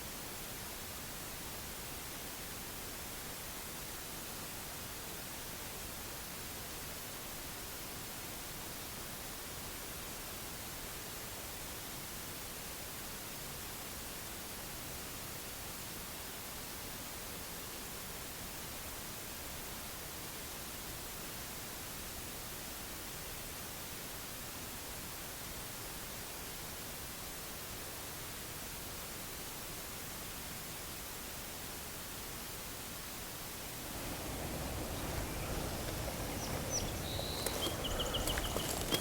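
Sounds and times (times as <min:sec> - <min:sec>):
steady recording hiss: 0:23.9 - 0:39.0.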